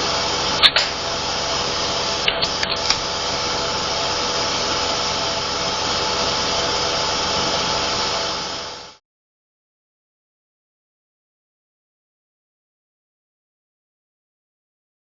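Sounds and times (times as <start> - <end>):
compressor droning: 0.0 - 9.0.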